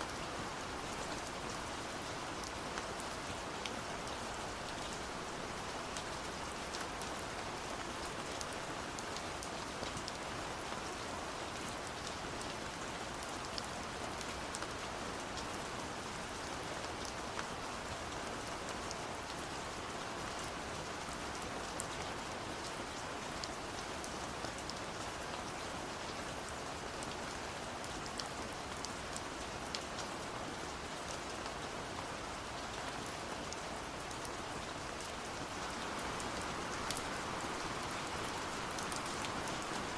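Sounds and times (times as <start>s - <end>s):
gentle rain hiss: 0.0s - 39.9s
small rain drop ticks: 35.4s - 39.9s.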